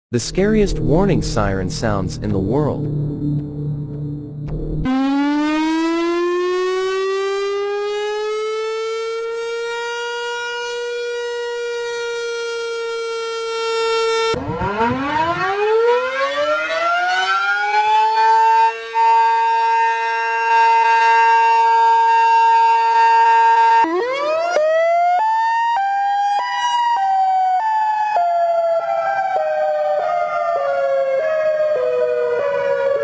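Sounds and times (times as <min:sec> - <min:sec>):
warning siren winding up: 0:00.4 - 0:33.0.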